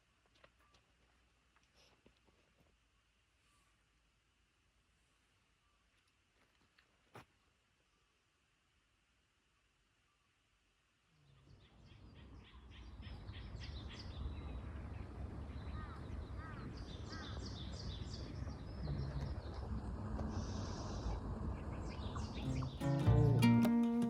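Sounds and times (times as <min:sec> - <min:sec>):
low outdoor background: 0:00.0 - 0:24.0
birds chirping: 0:11.1 - 0:24.0.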